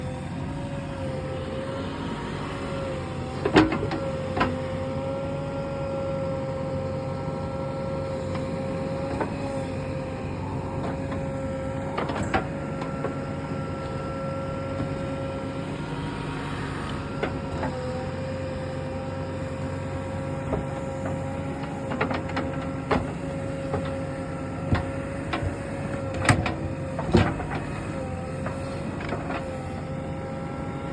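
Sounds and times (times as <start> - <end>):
backhoe engine whining: 0.0 - 30.9.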